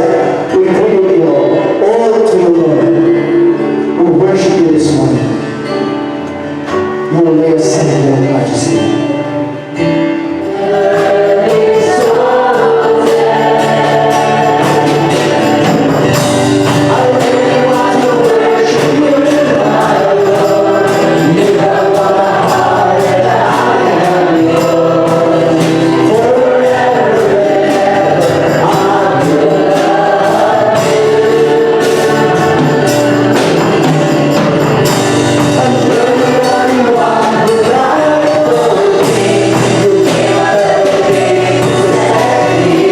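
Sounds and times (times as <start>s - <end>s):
group singing gospel song: 0.0s - 5.1s, 8.4s - 42.9s
instrumental accompaniment: 0.0s - 42.9s
tambourine-like percussion: 10.5s - 42.9s.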